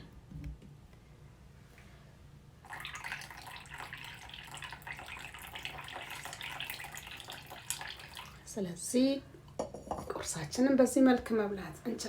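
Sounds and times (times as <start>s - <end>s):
coffee being poured: 2.6s - 8.5s.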